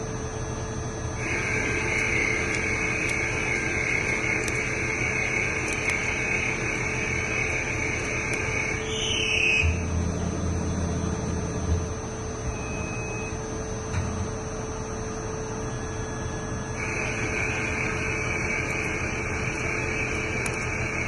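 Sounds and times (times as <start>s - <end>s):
high whine: 0.0s - 21.0s
lathe humming: 1.1s - 12.4s, 16.4s - 21.0s.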